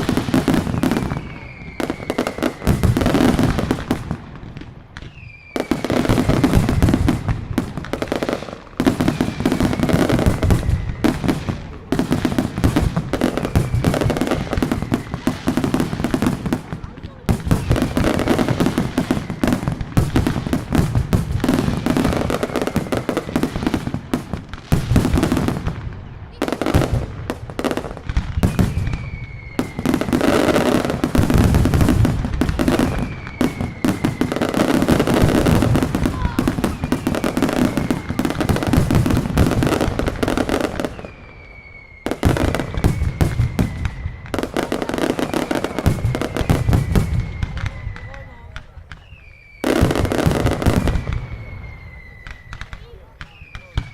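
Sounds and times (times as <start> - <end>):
rapid firecracker bangs: 0.0 - 53.9
falling whistles: 0.7 - 3.2, 5.0 - 7.0, 9.0 - 11.4, 13.2 - 15.8, 17.5 - 19.9, 21.9 - 23.8, 28.4 - 30.9, 32.6 - 53.9.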